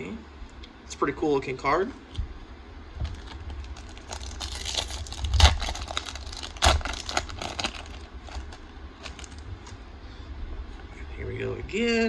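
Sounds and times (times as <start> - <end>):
foil pack crinkling and tearing: 3.0 - 9.8.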